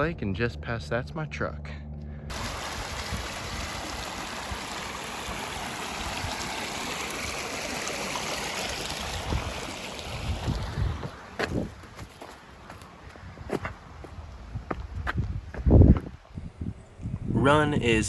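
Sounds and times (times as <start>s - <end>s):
running water rushing: 2.3s - 13.0s.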